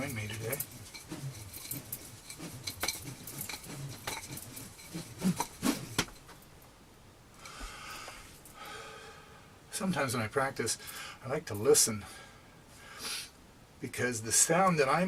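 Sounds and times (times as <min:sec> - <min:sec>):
nunchaku chain clinking: 0:00.0 - 0:06.3.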